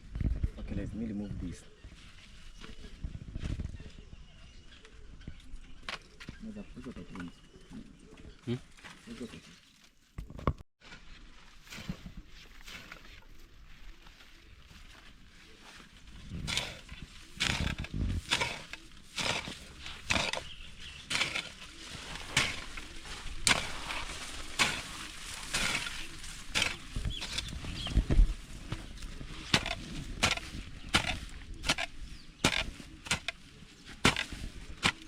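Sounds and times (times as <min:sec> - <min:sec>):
hand tool chopping grass and soil: 0:16.3 - 0:35.0.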